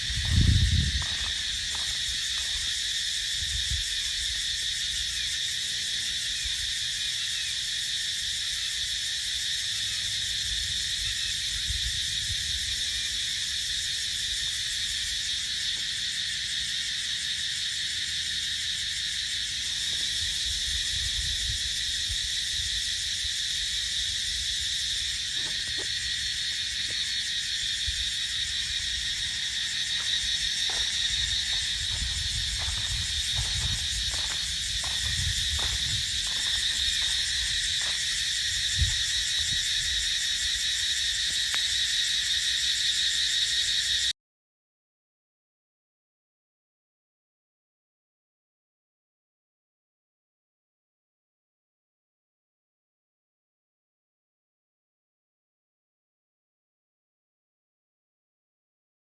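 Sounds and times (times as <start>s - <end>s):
cicadas buzzing: 0.0s - 44.1s.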